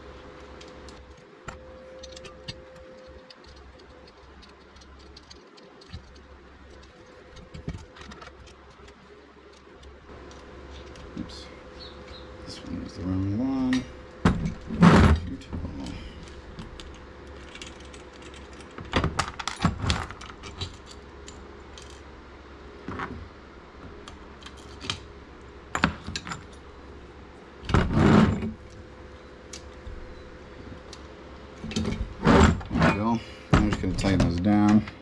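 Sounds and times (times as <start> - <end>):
metal hardware clinking: 0.5 - 11.1
metal hardware clattering: 13.6 - 22.0, 31.6 - 35.0.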